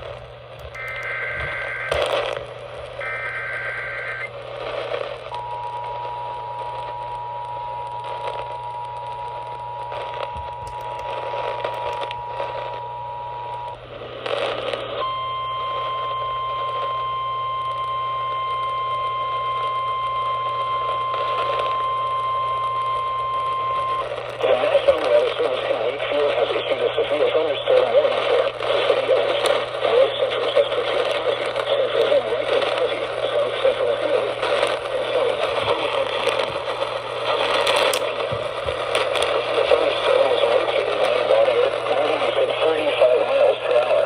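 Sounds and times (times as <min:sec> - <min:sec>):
radio hiss: 0:00.0 - 0:44.0
steady alarm tone: 0:00.7 - 0:04.4
two-tone attention signal: 0:00.8 - 0:02.2, 0:03.0 - 0:04.3, 0:15.0 - 0:24.0
warbling data bursts: 0:00.8 - 0:04.3.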